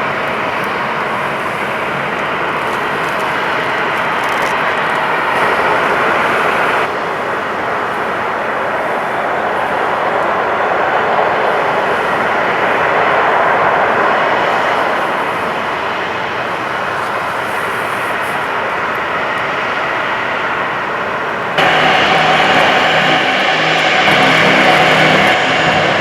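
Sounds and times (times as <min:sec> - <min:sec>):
airliner engines passing: 0:00.0 - 0:26.0.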